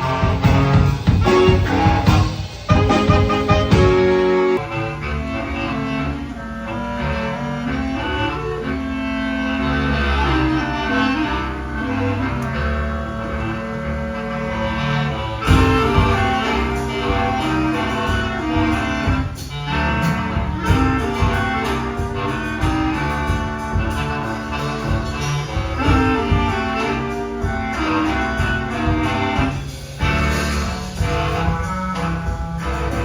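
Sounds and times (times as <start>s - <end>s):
drum hits: 0.0s - 4.6s, 15.4s - 33.0s
bass clarinets playing metal: 0.0s - 33.0s.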